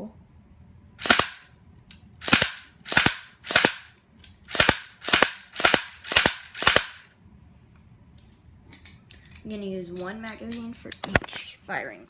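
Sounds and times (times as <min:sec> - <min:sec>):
airsoft pistol shots: 0:01.0 - 0:01.5, 0:02.2 - 0:03.9, 0:04.5 - 0:07.0.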